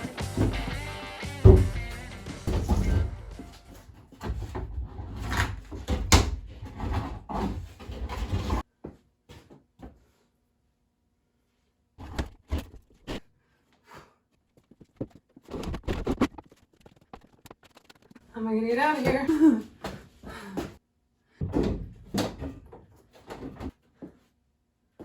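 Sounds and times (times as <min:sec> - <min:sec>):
background music: 0:00.0 - 0:03.8.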